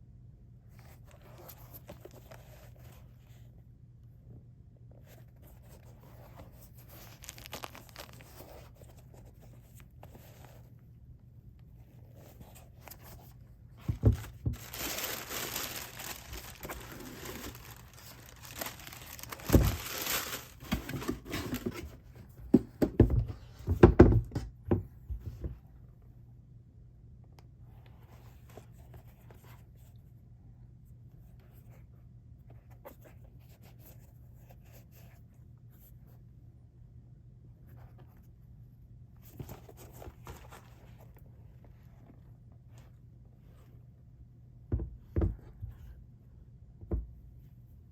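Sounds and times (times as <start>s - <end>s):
wrapping paper crinkling: 6.8s - 8.6s, 14.1s - 21.8s
dull thumps: 13.8s - 21.0s.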